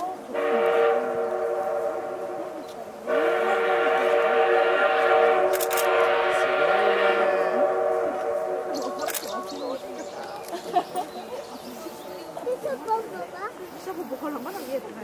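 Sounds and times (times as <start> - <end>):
steam locomotive whistle: 0.3 - 10.1.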